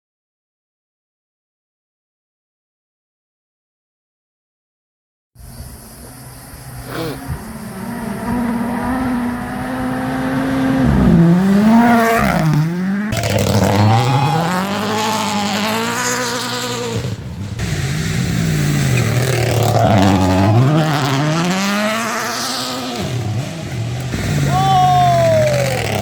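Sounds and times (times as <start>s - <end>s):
rally car engine revving: 5.7s - 26.0s.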